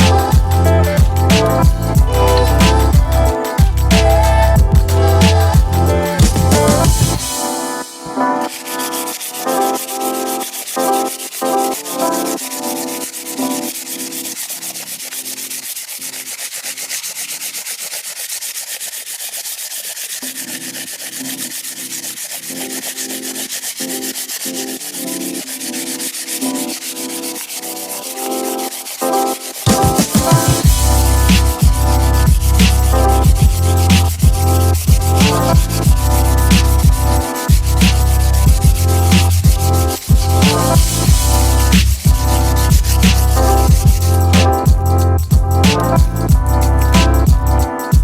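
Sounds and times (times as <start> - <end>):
metal key being sanded: 13.0 - 48.0.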